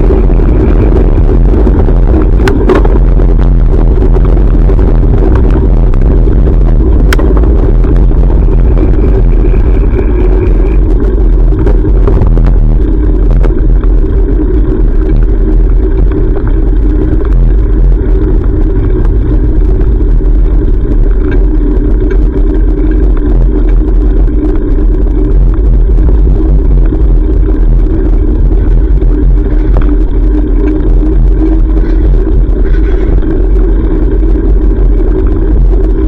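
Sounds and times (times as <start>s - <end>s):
road and traffic noise: 0.0s - 36.0s
wind on microphone: 0.0s - 36.0s.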